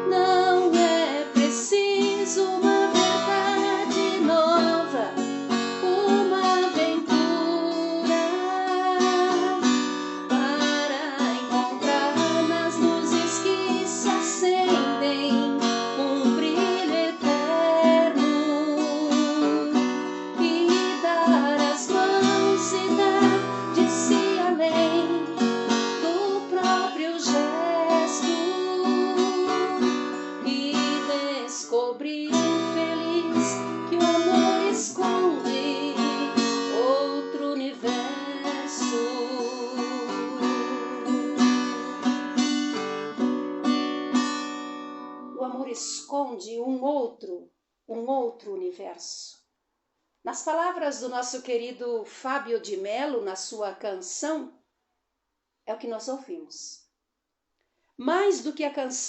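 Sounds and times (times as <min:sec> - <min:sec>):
song with strummed acoustic guitar: 0:00.0 - 0:46.1.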